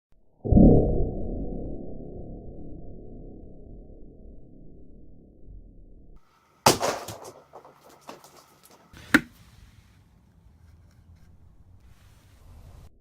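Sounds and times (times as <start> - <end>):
low rumble: 0.5 - 6.2
sledgehammer hitting a can: 6.6 - 9.4
small knocks: 6.6 - 9.5, 10.5 - 11.4.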